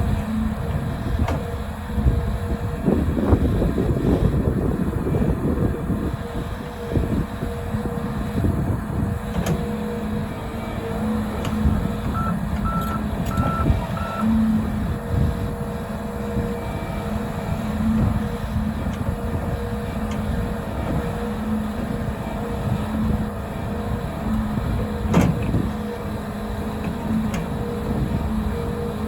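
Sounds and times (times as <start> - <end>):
excavator diesel engine: 0.0 - 29.0
short alarm beeps: 12.1 - 14.3.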